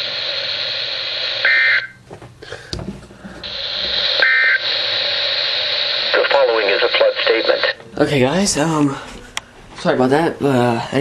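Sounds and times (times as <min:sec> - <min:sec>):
radio static hiss: 0:00.0 - 0:02.0, 0:03.4 - 0:07.8
buzzy digital data bursts: 0:03.5 - 0:07.6.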